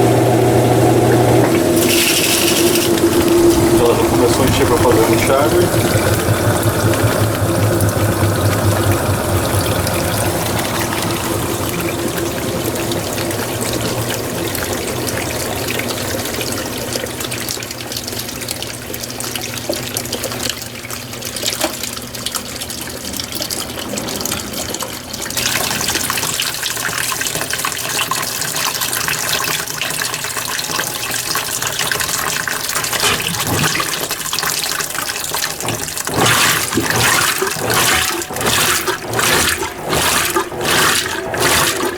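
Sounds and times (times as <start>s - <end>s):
low hum: 0.0s - 16.3s
water splashing in washing machine: 0.0s - 41.9s.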